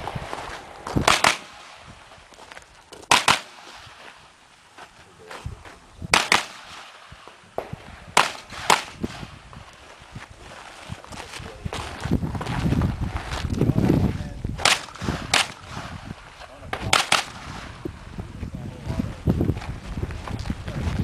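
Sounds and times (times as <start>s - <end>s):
rifle shots: 0.9s - 2.1s, 3.0s - 4.0s, 6.1s - 9.4s, 14.6s - 16.0s, 16.8s - 17.7s.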